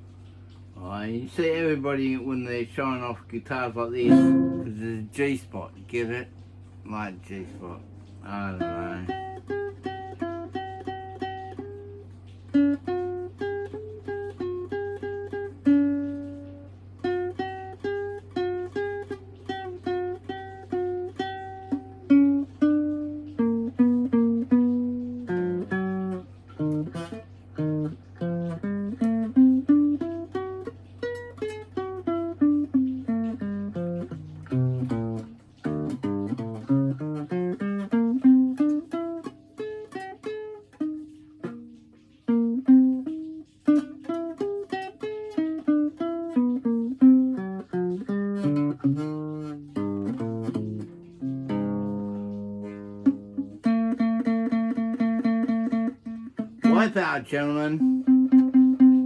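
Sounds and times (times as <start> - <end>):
steady low hum: 0.0 - 59.0
guitar picked notes: 0.2 - 59.0.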